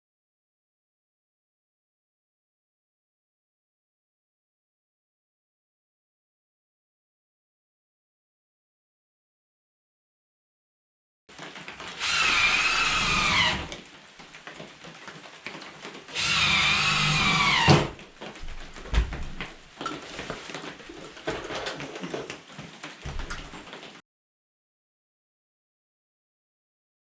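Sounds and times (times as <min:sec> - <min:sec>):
power drill driving screws: 0:11.9 - 0:13.8, 0:16.1 - 0:18.0
handling knocks and clicks: 0:18.0 - 0:24.0.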